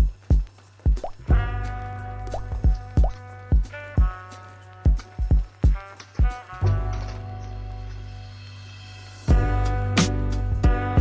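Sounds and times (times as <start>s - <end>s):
deep kick drum: 0.0s - 1.6s, 2.3s - 4.2s, 4.9s - 6.4s, 10.6s - 11.0s
background music with held chords: 0.0s - 11.0s.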